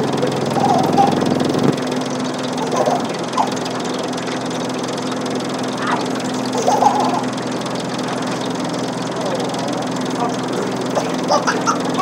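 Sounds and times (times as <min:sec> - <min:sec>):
short wavering high sounds: 0:00.0 - 0:04.7, 0:05.7 - 0:08.4
steady motor hum: 0:00.0 - 0:12.0.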